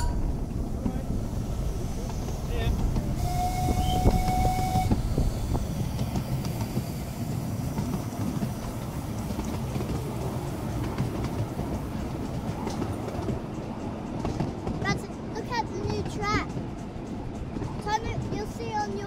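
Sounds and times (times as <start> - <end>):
train rumbling on track: 0.0 - 19.0
thin whistle tone: 3.2 - 5.0.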